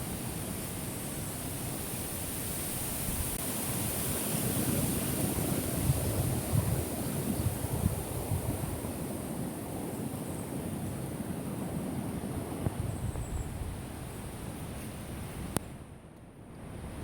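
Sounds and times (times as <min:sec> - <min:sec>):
wind buffeting microphone: 0:04.4 - 0:17.0.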